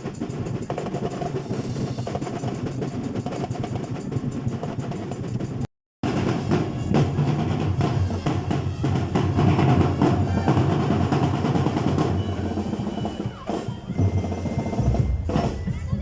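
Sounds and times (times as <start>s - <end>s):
snare drum beats and rolls: 0.0s - 16.0s
bass drum: 5.4s - 16.0s.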